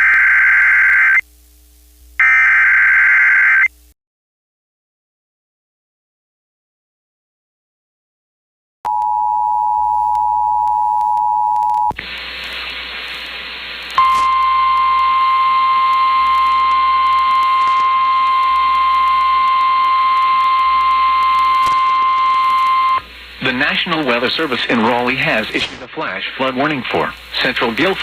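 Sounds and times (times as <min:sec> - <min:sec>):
faint static: 0:08.9 - 0:28.0
steady warning tone: 0:14.0 - 0:24.2.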